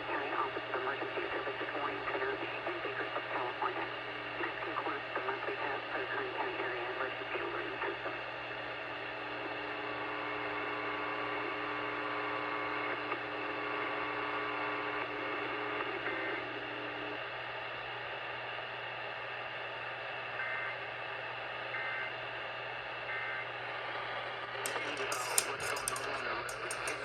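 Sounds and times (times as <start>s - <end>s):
radio static and hiss: 0.0s - 8.2s, 24.4s - 27.0s.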